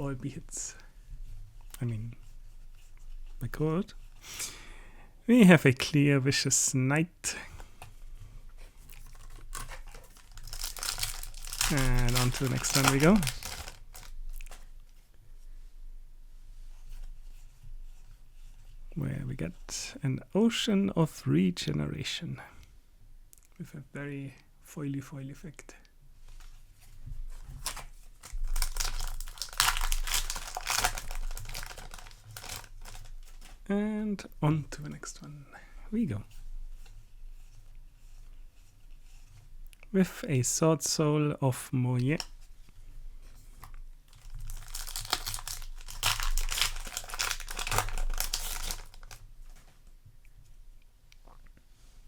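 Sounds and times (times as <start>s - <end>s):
foil wrappers crinkling: 8.9s - 14.7s, 27.4s - 33.7s, 44.1s - 49.6s.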